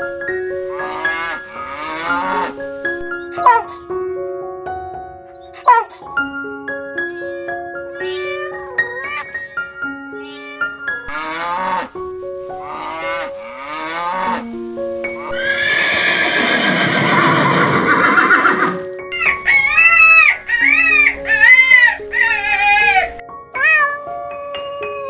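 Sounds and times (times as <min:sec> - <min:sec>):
background music: 0:00.0 - 0:25.0
farm animal calls: 0:00.7 - 0:03.8, 0:05.4 - 0:06.1, 0:11.1 - 0:12.0, 0:12.6 - 0:14.4, 0:15.2 - 0:18.9
cat meowing: 0:10.2 - 0:11.9, 0:15.2 - 0:18.8, 0:19.5 - 0:25.0.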